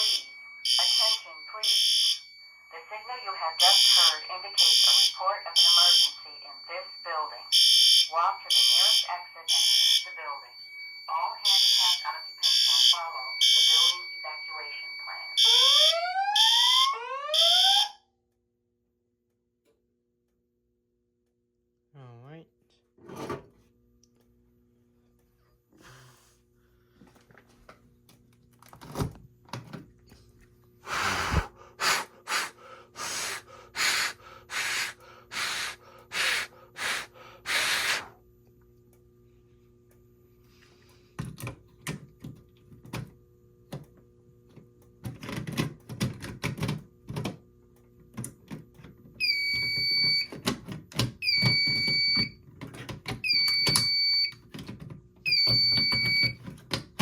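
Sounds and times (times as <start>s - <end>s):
fire alarm electronic tone: 0.0s - 18.1s, 30.9s - 38.0s, 49.2s - 50.5s, 51.1s - 52.4s, 53.2s - 54.4s, 55.2s - 56.4s
short hissing bursts: 30.9s - 38.2s.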